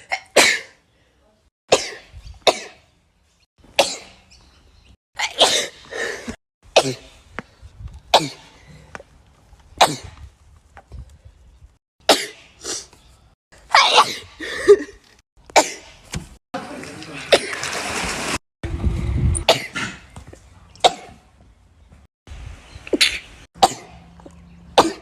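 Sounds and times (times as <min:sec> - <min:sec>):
sneezes: 0:19.4 - 0:20.0, 0:20.8 - 0:21.2, 0:24.8 - 0:25.0.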